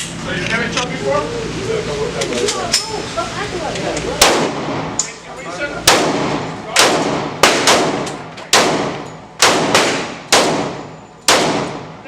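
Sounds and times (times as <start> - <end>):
echoing gunshots: 4.2 - 5.0, 5.8 - 12.0.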